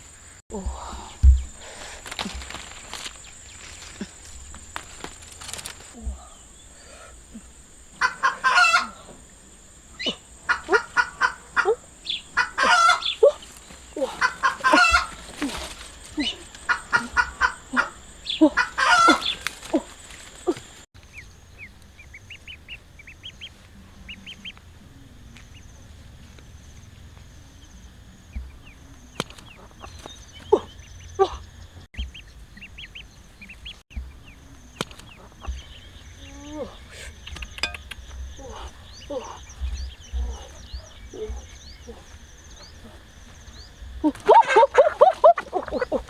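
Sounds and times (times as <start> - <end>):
chickens clucking: 7.4 - 20.9, 28.3 - 46.0.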